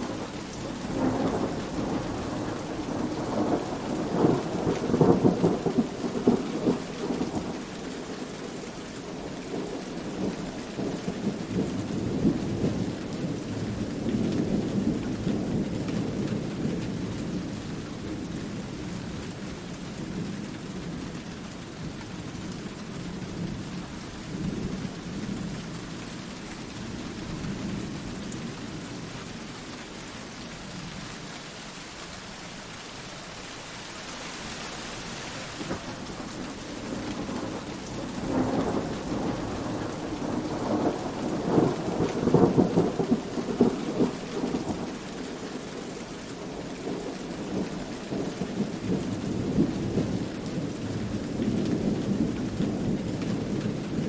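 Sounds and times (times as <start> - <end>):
rolling thunder: 0.0 - 7.5, 35.6 - 45.0
steady rain: 0.0 - 54.0.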